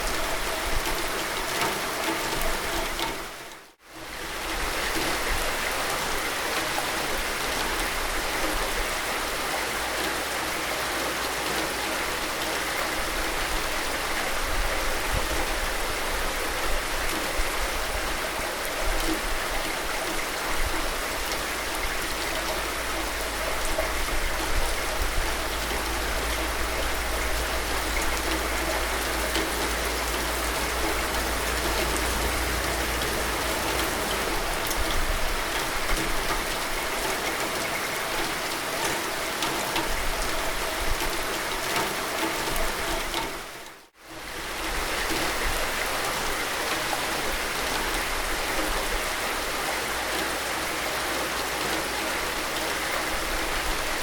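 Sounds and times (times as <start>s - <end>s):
heavy rain hissing: 4.1s - 54.0s
low rumble: 22.5s - 35.8s.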